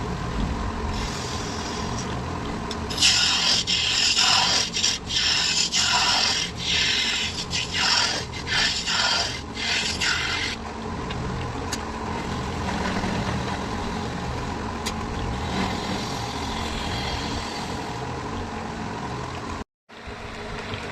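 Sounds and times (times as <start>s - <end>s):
tool rasping against spinning wood: 2.9s - 10.6s.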